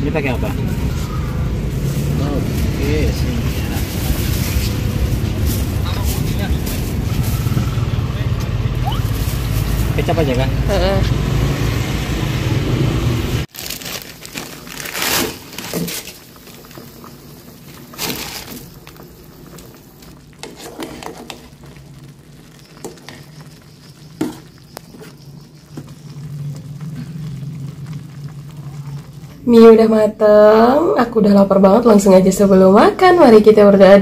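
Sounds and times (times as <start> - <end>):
passing traffic: 0.0 - 13.5, 24.7 - 29.6
plastic crinkling: 8.8 - 10.3, 13.5 - 29.2.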